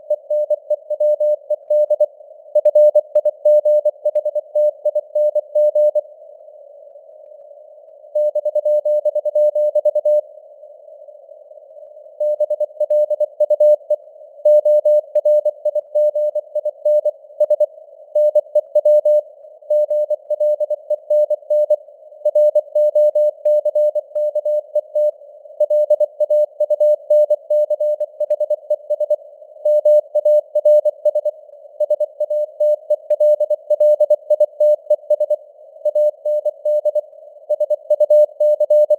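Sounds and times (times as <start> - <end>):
morse code beeps: 12.2 - 38.9.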